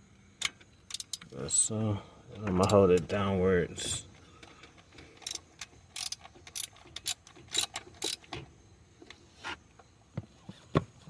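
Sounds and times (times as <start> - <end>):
hand ratchet clicking: 4.4 - 8.3.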